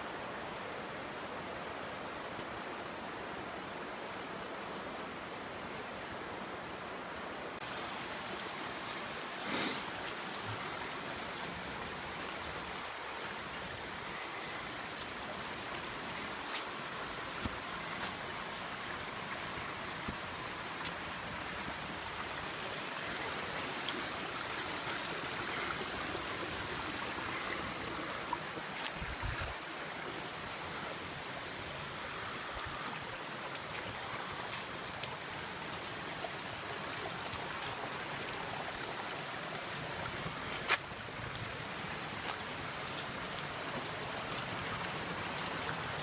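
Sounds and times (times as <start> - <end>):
mountain stream running: 0.0 - 4.3, 7.1 - 46.0.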